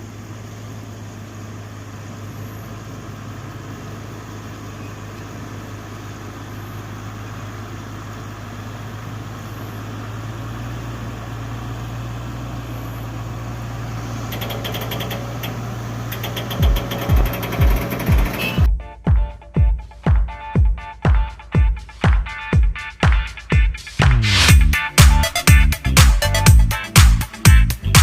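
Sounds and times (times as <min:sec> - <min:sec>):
diesel engine running: 0:00.0 - 0:18.7, 0:24.0 - 0:28.0
fast high rattling ticks: 0:14.3 - 0:18.6.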